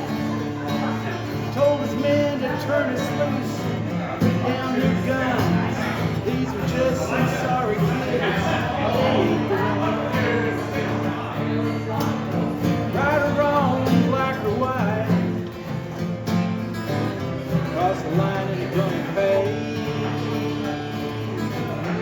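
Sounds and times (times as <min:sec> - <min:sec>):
acoustic guitar country music: 0:00.0 - 0:22.0.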